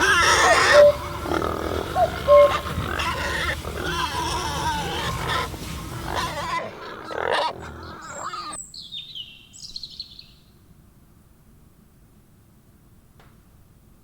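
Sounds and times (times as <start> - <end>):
rough animal call: 0.0 - 8.6
bird chirping: 0.0 - 10.4.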